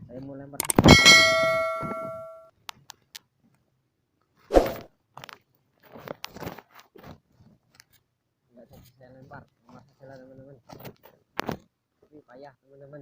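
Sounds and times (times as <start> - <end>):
metal clang ringing: 0.6 - 2.4
rustling and small knocks: 5.1 - 11.8.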